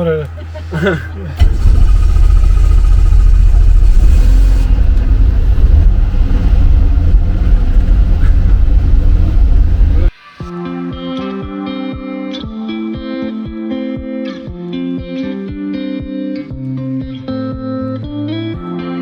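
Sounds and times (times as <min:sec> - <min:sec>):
helicopter engine and rotor: 0:01.4 - 0:05.2.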